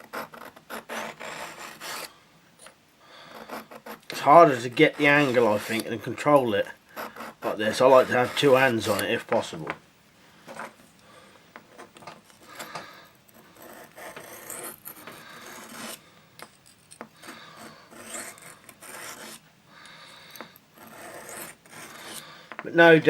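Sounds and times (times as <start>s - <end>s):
knife scraping on whetstone: 0.0s - 2.1s, 3.3s - 6.0s, 7.0s - 9.0s, 13.4s - 16.0s, 17.2s - 19.4s, 20.8s - 22.3s.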